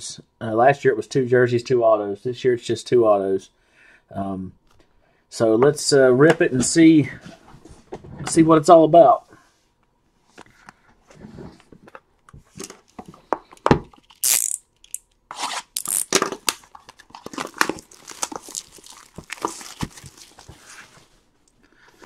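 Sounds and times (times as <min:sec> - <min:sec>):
cardboard and wrapping tearing: 0:15.3 - 0:21.0.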